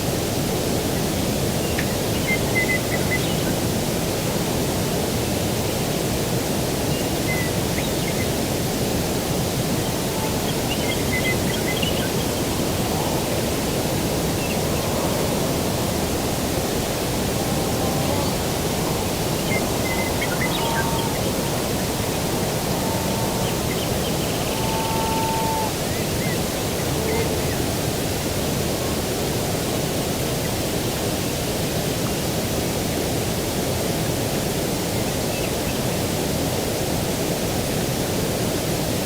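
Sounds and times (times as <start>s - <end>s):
rushing outdoor air: 0.0s - 39.0s
distant surf: 8.6s - 30.2s.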